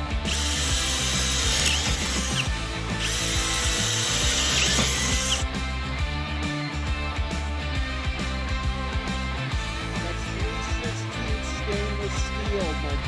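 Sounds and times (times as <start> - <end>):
power drill boring through steel: 0.0 - 5.5
music: 0.0 - 13.0.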